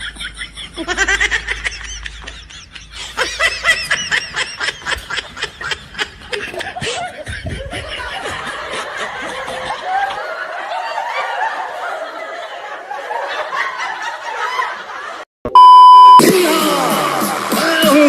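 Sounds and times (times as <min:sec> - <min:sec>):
people laughing: 0:00.0 - 0:15.3, 0:16.2 - 0:18.0
electronic beep tone: 0:15.5 - 0:16.2
music with voice: 0:16.2 - 0:18.0.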